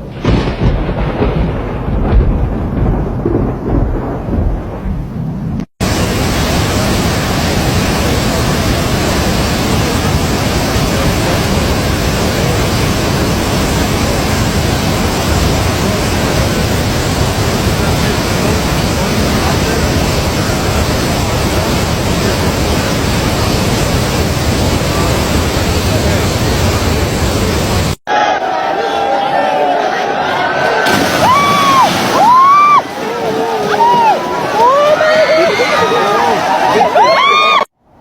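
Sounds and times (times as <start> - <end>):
low rumble: 0.0 - 7.8
downpour hissing: 5.8 - 28.0, 30.8 - 37.7.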